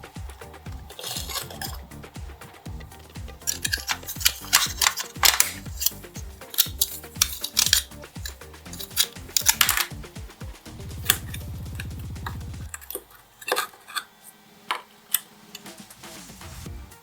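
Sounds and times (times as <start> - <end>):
small hard parts clicking: 0.0 - 11.9
background music: 0.0 - 13.4, 14.5 - 17.0
low rattle: 6.8 - 12.7.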